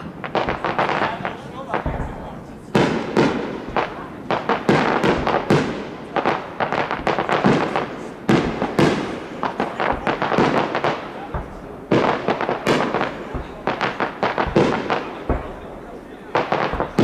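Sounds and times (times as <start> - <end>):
fireworks bangs: 0.0 - 17.0
fireworks crackling: 0.0 - 17.0.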